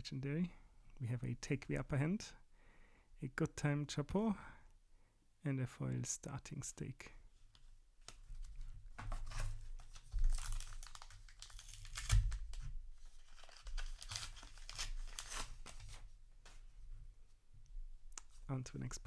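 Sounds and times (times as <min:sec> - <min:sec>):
wrapper crinkling and tearing: 0:09.6 - 0:16.0.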